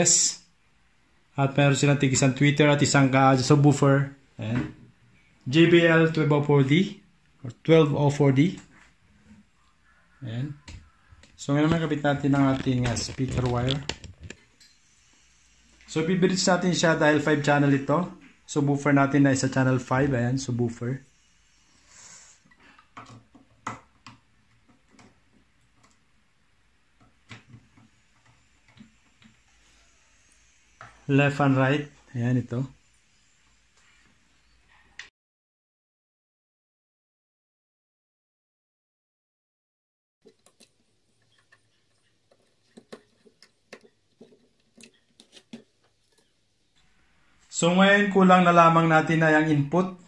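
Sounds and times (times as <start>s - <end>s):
faint clicks and taps of wire: 22.8s - 26.1s, 40.2s - 46.3s.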